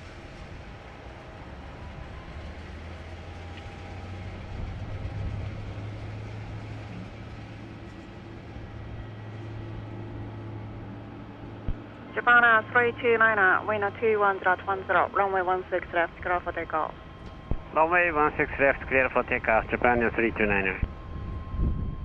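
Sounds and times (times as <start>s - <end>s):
jet engines rumbling: 0.0s - 22.0s.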